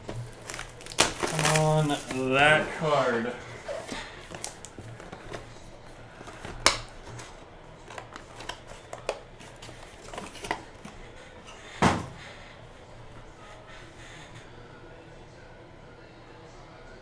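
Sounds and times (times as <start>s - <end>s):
cards clicking: 0.0s - 11.2s
packaging rustling: 0.0s - 13.9s.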